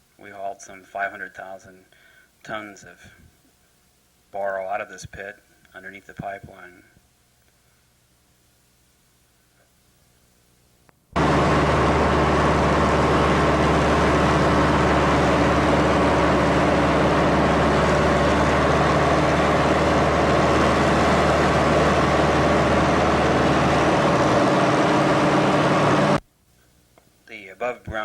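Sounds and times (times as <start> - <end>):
small plane engine drone: 11.2 - 26.2.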